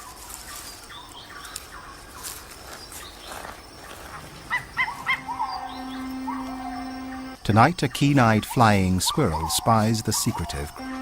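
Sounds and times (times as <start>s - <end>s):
faint forest crackle: 0.0s - 6.9s
animal chirps: 0.0s - 10.8s.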